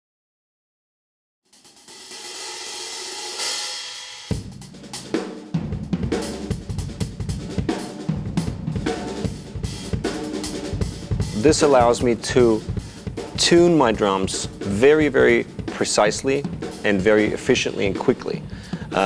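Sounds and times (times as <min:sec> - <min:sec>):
drum beat: 0:01.6 - 0:19.0
cymbal wash: 0:01.7 - 0:04.7, 0:08.9 - 0:19.0.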